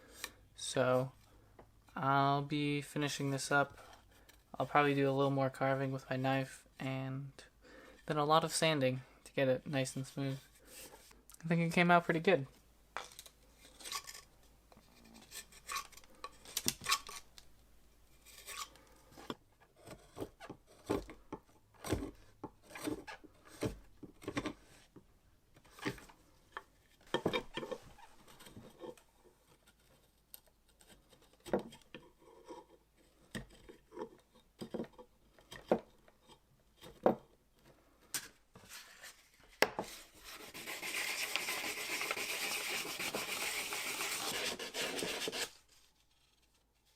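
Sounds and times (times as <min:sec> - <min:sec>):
knife scraping wood: 0:13.6 - 0:17.4, 0:18.1 - 0:24.9, 0:25.6 - 0:37.0, 0:38.6 - 0:46.6.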